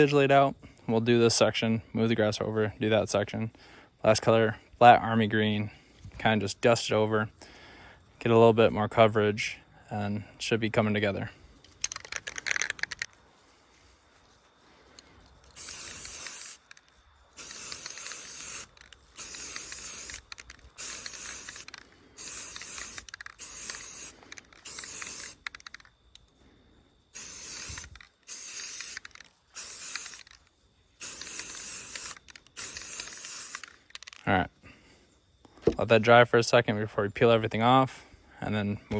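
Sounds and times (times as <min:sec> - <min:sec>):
spray paint can spraying: 0:11.8 - 0:13.1, 0:15.5 - 0:25.9, 0:27.2 - 0:34.2.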